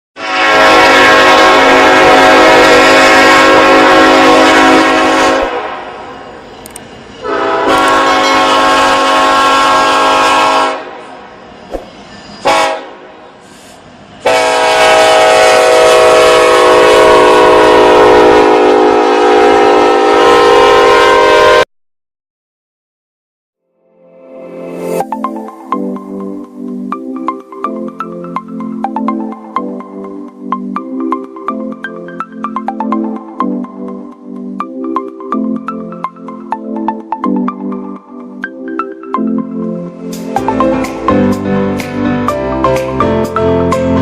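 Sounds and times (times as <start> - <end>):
train horn short toots: 0.2 - 6.0, 7.2 - 11.1, 12.4 - 13.2, 14.2 - 21.6
train horn blasts: 0.2 - 6.1, 7.2 - 11.2, 12.4 - 13.2, 14.2 - 21.6.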